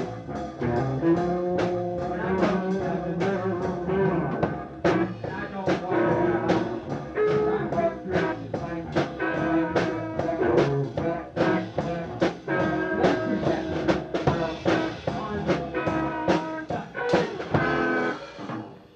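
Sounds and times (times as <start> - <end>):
drum kit beat: 0.0 - 18.8
guitar: 0.0 - 18.9
live band playing: 0.0 - 18.9.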